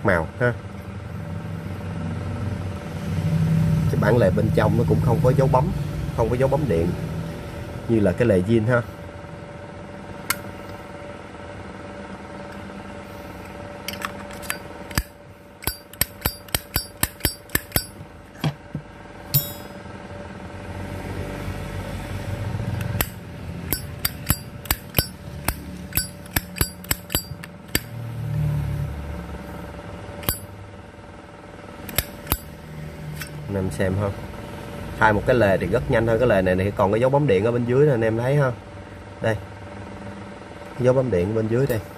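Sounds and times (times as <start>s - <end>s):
low steady hum: 0.0s - 41.9s
lighter lid clicking open and shut: 31.9s - 32.5s.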